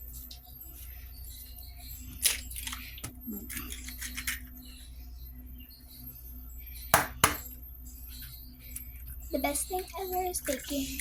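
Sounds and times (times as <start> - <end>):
eggshell tapping on bowl: 7.0 - 7.5.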